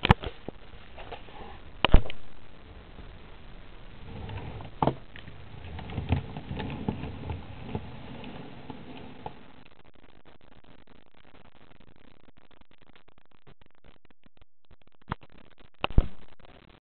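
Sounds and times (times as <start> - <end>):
low rustle: 0.0 - 9.8.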